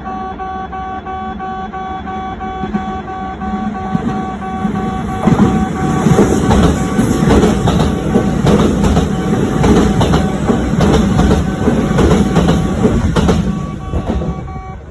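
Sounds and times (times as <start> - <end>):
crossing warning bell ringing: 0.0 - 14.9
train wheels clattering over rails: 3.8 - 14.9.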